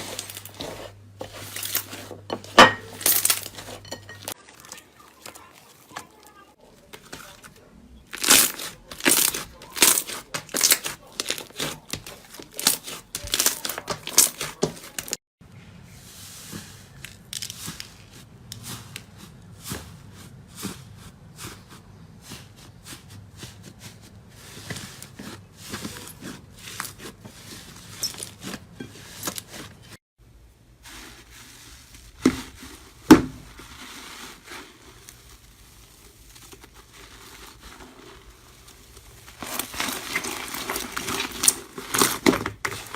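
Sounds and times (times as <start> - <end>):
slime crackling and crunching: 0.0 - 15.2, 30.8 - 42.9.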